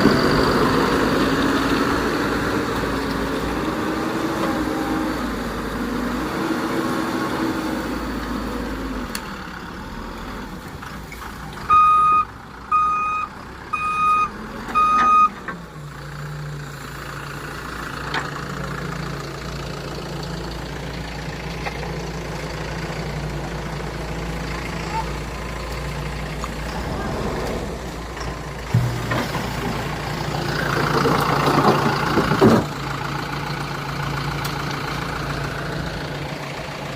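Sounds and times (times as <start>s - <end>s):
heavy machine diesel engines running: 0.0s - 36.9s
backup alarm beeps: 11.7s - 15.4s.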